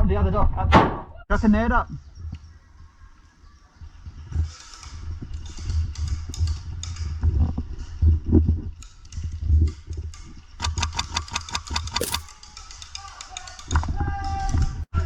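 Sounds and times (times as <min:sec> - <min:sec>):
airsoft rifle firing: 0:12.0 - 0:12.3.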